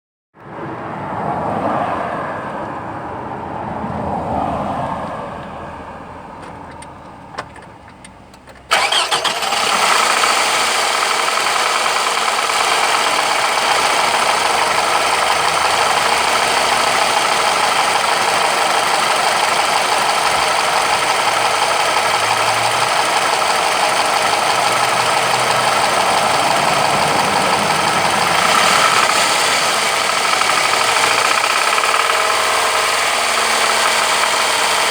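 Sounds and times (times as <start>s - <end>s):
car engine running with a knock: 9.7s - 34.9s.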